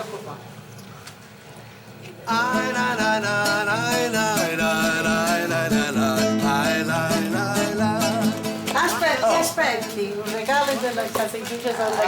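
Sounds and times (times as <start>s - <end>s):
pitch-bending melody: 2.3s - 8.7s.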